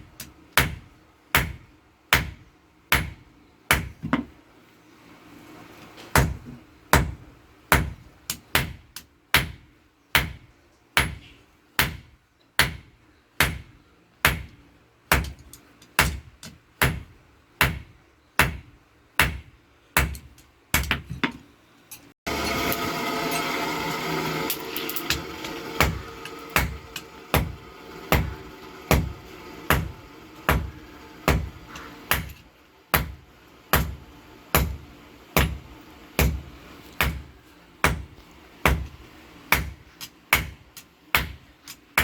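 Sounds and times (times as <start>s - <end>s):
steady motor noise: 22.3s - 39.7s
hammer striking an anvil: 24.7s - 34.8s, 35.4s - 35.6s.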